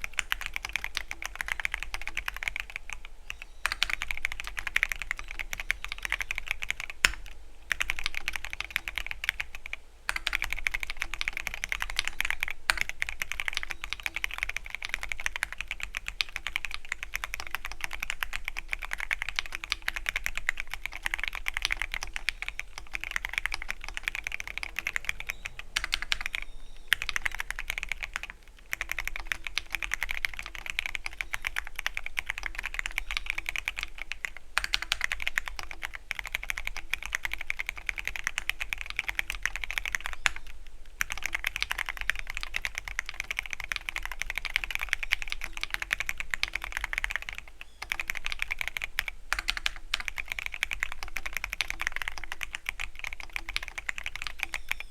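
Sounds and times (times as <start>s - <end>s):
mechanical keyboard typing: 0.0s - 54.9s.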